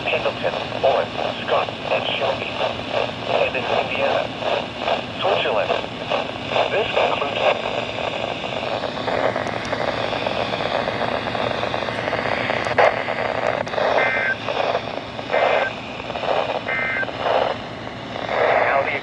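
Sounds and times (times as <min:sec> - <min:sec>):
radio static hiss: 0:00.0 - 0:19.0.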